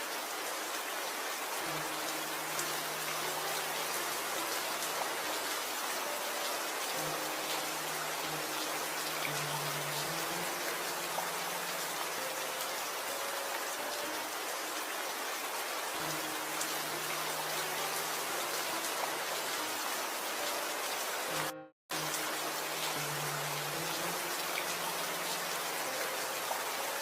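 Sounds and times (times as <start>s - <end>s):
steady rain falling: 0.0s - 27.0s.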